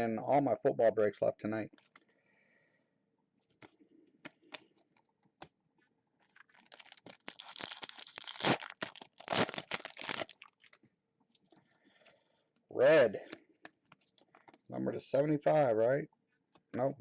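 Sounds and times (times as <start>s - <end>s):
foil pack tearing and crinkling: 6.3s - 10.8s.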